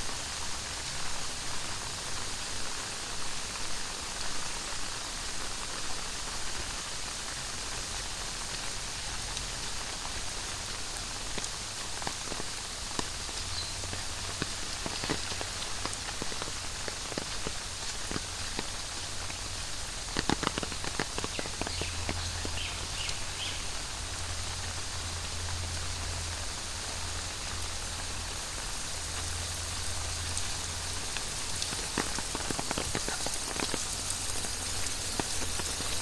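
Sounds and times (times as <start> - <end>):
heavy rain hissing: 0.0 - 36.0
close drips and taps: 27.4 - 36.0.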